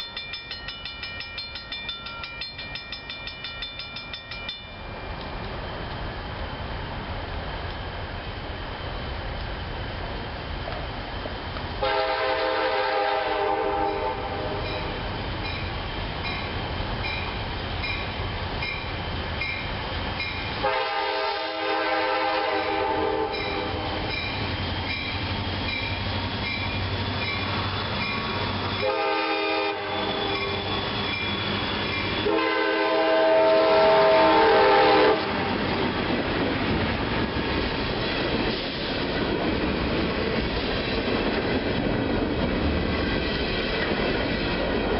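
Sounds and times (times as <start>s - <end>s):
passing train rumble: 0.0s - 44.9s
train air horn blasts: 11.8s - 14.7s, 20.6s - 24.0s, 28.7s - 30.9s, 32.2s - 35.5s.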